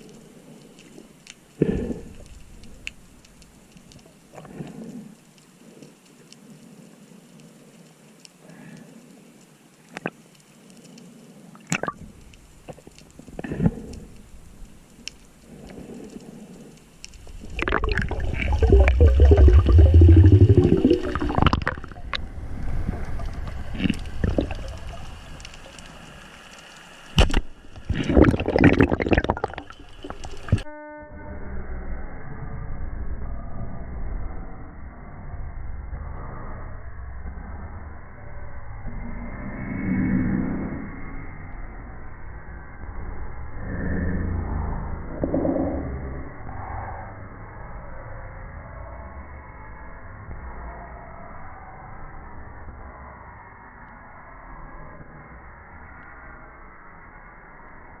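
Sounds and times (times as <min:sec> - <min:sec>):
bubbling rush with low rumble: 0:17.1 - 0:26.4, 0:27.0 - 0:30.7
sea water splashing and gurgling: 0:17.2 - 0:30.7.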